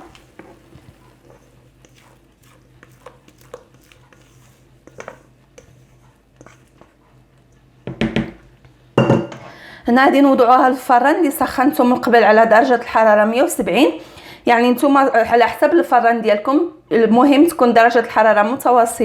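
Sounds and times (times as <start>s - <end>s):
spatula scraping batter in bowl: 0.0s - 7.8s.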